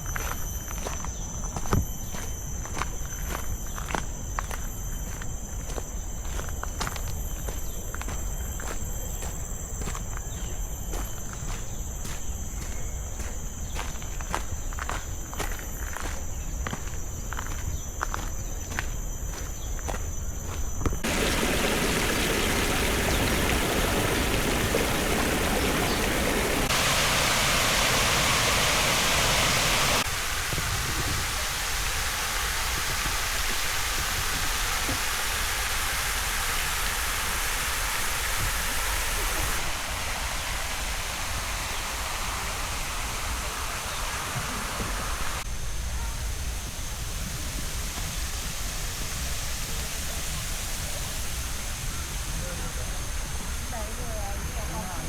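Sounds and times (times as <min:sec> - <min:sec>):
running water rushing: 0:21.0 - 0:55.0.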